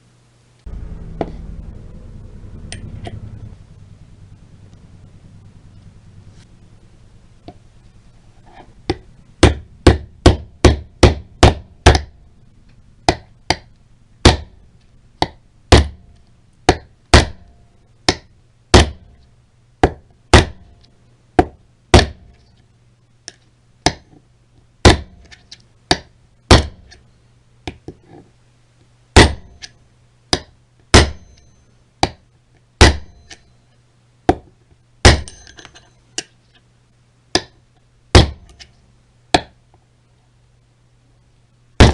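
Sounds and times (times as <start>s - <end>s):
faint steady hum: 0.0s - 41.9s
hammer striking metal: 30.4s - 31.6s, 35.0s - 35.9s.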